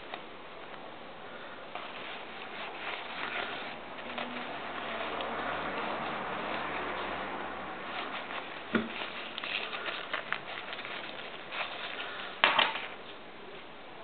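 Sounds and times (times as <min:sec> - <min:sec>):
phone pouch clicks and rustles: 0:07.9 - 0:13.0.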